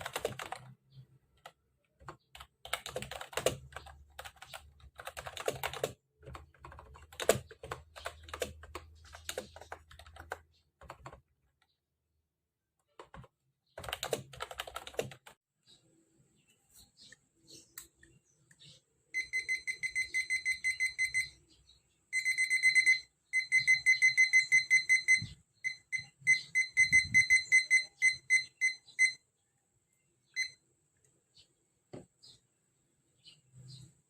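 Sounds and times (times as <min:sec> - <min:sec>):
electronic alarm beeping: 0:19.1 - 0:21.5, 0:22.1 - 0:29.3, 0:30.3 - 0:30.6.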